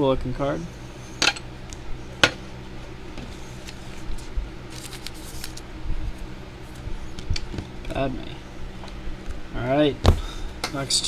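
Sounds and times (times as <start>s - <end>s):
packaging crinkling: 3.4s - 6.8s.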